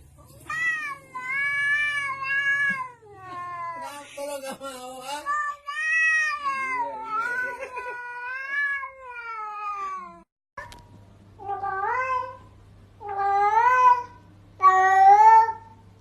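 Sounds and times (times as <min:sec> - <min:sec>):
cat meowing: 0:00.3 - 0:04.0, 0:05.2 - 0:10.7, 0:11.4 - 0:15.8
cat yowling: 0:00.4 - 0:04.0, 0:05.2 - 0:10.2, 0:11.4 - 0:12.4, 0:13.0 - 0:15.8.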